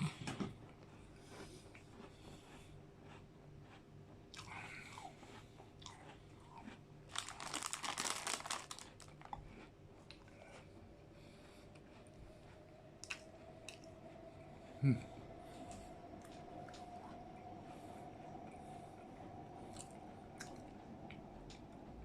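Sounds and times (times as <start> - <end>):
crunching and chewing biscuit: 0.0 - 13.9, 19.6 - 21.7.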